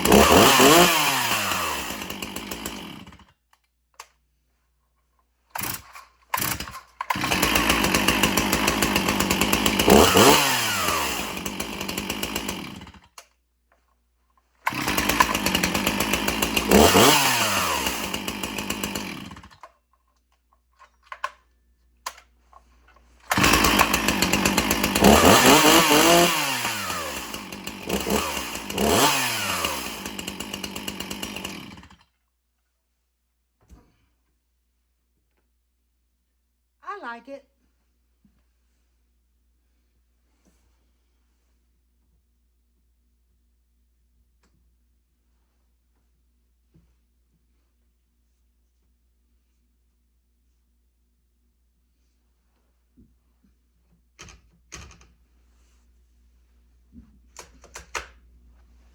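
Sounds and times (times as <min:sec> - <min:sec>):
chainsaw idling and revving: 0:00.0 - 0:03.3, 0:05.6 - 0:13.2, 0:14.6 - 0:19.6, 0:23.3 - 0:32.0
chainsaw pull-starting: 0:00.0 - 0:03.4, 0:05.5 - 0:13.3, 0:14.6 - 0:19.8, 0:22.1 - 0:32.1.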